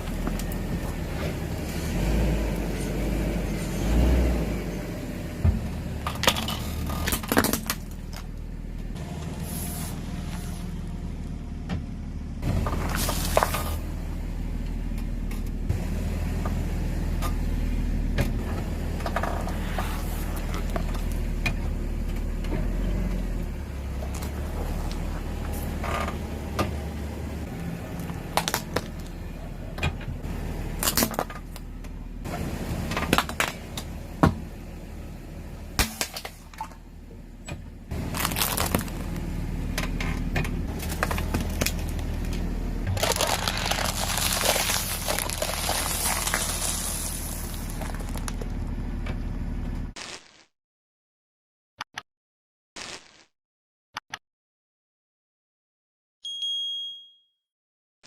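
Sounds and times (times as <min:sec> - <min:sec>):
car engine running: 0:00.0 - 0:50.0
objects cracking under tyres: 0:06.0 - 0:08.3, 0:19.0 - 0:21.6, 0:28.0 - 0:29.2, 0:30.8 - 0:31.7, 0:37.9 - 0:48.6, 0:50.0 - 0:50.5.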